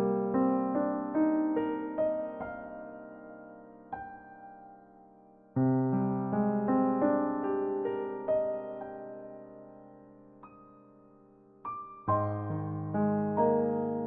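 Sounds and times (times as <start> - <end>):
soft piano music: 0.0 - 14.0.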